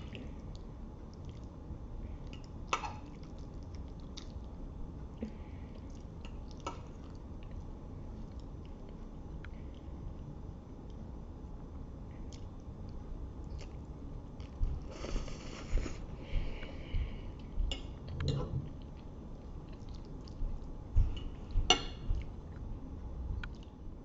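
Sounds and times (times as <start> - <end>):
chewing with wet mouth clicks: 0.1 - 1.6, 2.3 - 4.5, 5.2 - 10.2, 12.2 - 14.8, 17.4 - 22.7, 23.4 - 23.8.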